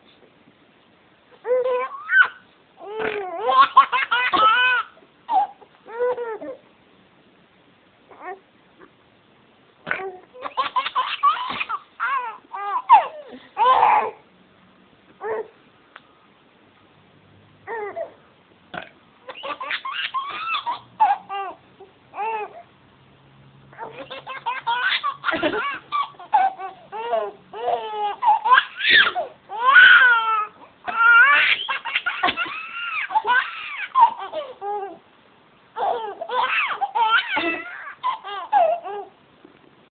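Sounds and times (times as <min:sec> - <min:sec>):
baby giggling and squealing: 0:01.4 - 0:06.6, 0:09.9 - 0:14.2, 0:19.3 - 0:21.6, 0:23.8 - 0:35.0, 0:35.8 - 0:39.2.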